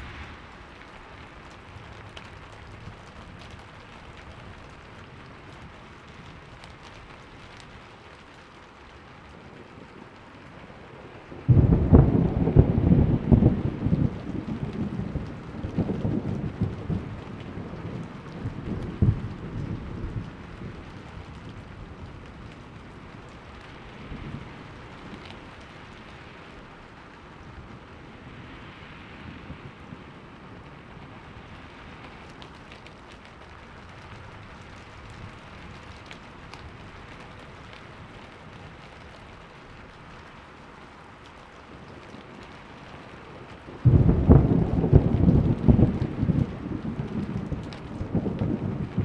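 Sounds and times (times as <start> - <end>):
steady rain falling: 0.0 - 49.0
thunder rumbling: 9.3 - 28.2, 41.7 - 49.0
loud peal of thunder: 11.4 - 20.1, 43.8 - 49.0.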